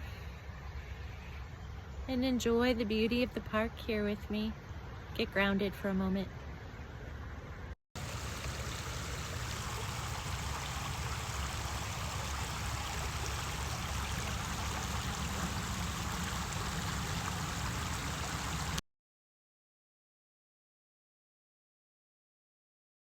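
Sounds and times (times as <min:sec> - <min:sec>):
flowing stream water: 0:08.0 - 0:18.8.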